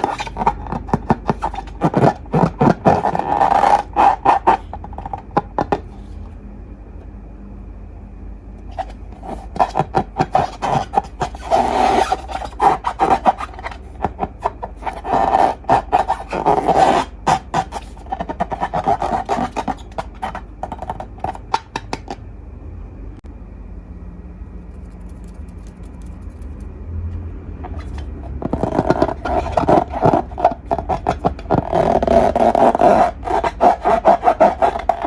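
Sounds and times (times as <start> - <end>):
slime squelching: 0.0 - 6.2, 8.7 - 22.2, 27.6 - 35.0.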